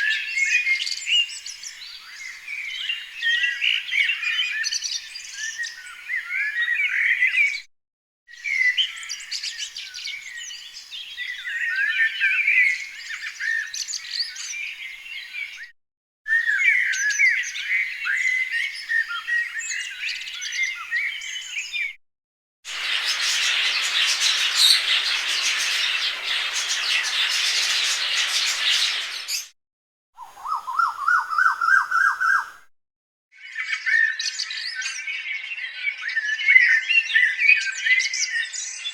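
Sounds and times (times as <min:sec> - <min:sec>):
small birds chirping: 0:16.4 - 0:21.9, 0:22.7 - 0:29.6
bird flock chorus: 0:22.7 - 0:29.5
repeated rising bird notes: 0:22.7 - 0:29.5.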